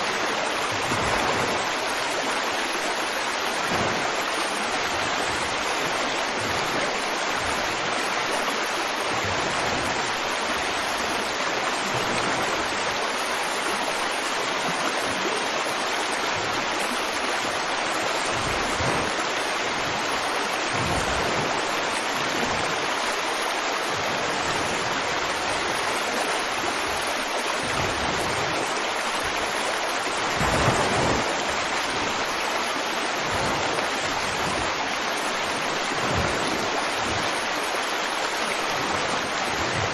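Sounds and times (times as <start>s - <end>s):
water splash: 0.0s - 8.0s, 18.2s - 39.9s
river water flowing over rocks: 0.0s - 39.9s.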